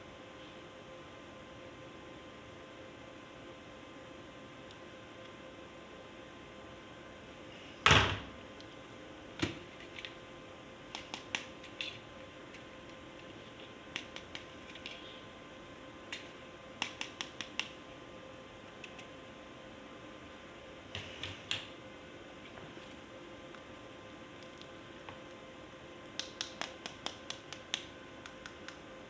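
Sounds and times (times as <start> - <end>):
small clicks and taps: 16.8 - 17.8, 26.1 - 28.8.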